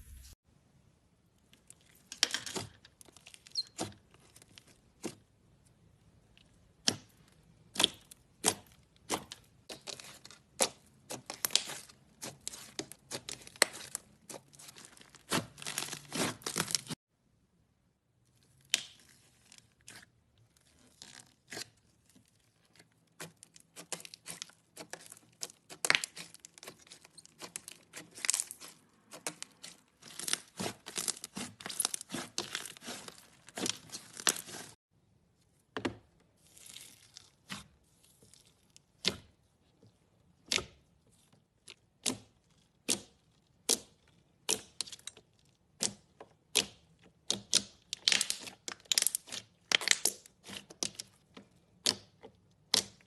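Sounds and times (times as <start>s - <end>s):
slime crackling and popping: 46.5s - 51.1s.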